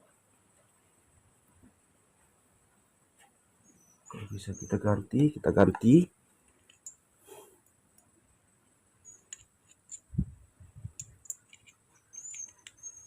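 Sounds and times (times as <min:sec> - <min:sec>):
small parts clicking and tapping: 0:05.2 - 0:07.0, 0:09.1 - 0:10.2, 0:10.8 - 0:13.0.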